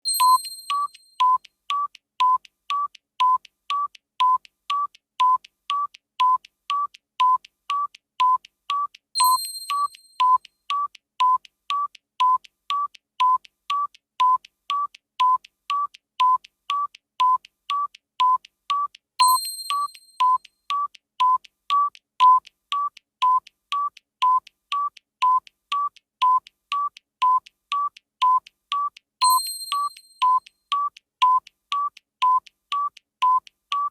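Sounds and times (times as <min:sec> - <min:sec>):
bright electronic chime: 0:00.1 - 0:00.9, 0:29.2 - 0:30.0
electronic timer beeps: 0:00.1 - 0:22.4, 0:23.2 - 0:23.4, 0:24.2 - 0:33.9.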